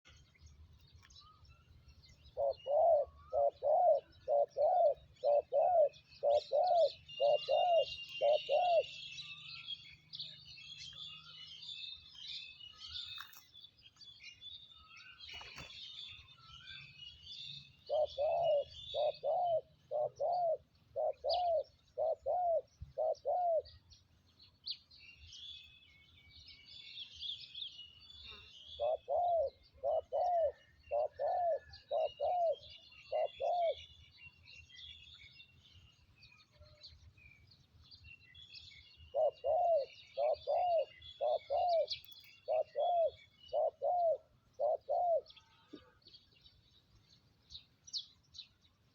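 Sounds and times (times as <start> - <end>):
small birds chirping: 0.0 - 48.9
dove cooing: 2.2 - 9.3, 17.8 - 23.8, 28.7 - 33.9, 39.1 - 46.0.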